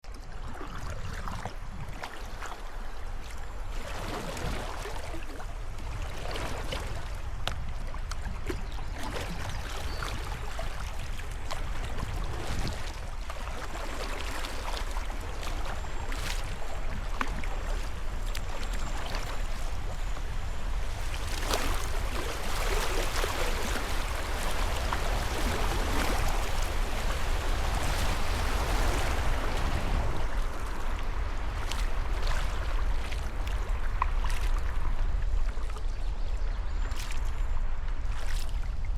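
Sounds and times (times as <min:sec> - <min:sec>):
paddle splashes: 0:00.0 - 0:38.9
river current rushing: 0:17.5 - 0:33.9.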